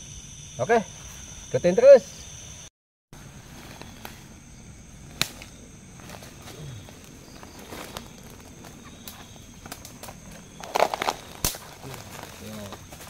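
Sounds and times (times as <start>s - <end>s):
dry twigs snapping: 3.5s - 4.4s, 5.0s - 13.0s
footsteps through leaf litter: 6.0s - 9.3s, 10.5s - 13.0s.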